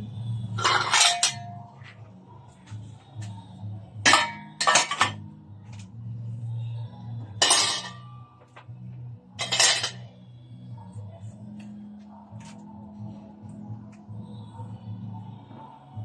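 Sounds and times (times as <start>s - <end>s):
metal parts clinking: 0.6s - 1.8s, 4.1s - 5.2s, 7.4s - 8.0s, 9.4s - 10.1s.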